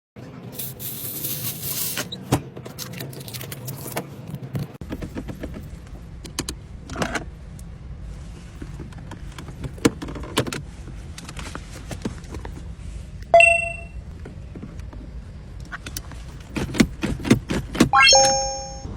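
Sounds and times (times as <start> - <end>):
low steady hum: 10.6 - 16.8, 18.0 - 18.9
bright ringing ding: 13.4 - 14.0, 18.0 - 18.9.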